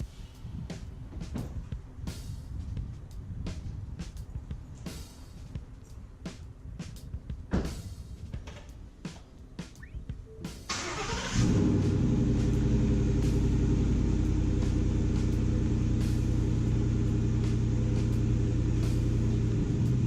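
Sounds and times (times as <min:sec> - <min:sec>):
engine starting and idling: 0:10.7 - 0:20.0.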